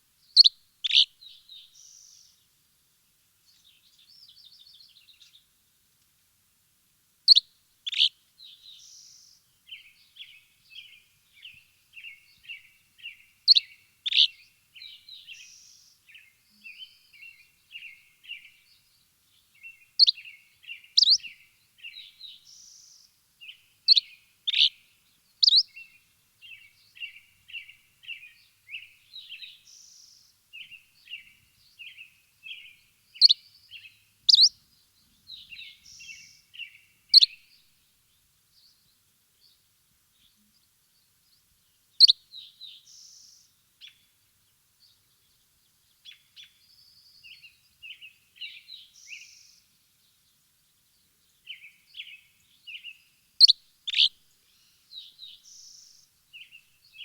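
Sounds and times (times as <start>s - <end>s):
birds chirping: 7.9s - 8.1s, 9.7s - 18.5s, 25.4s - 29.7s, 30.5s - 37.4s, 51.4s - 54.2s.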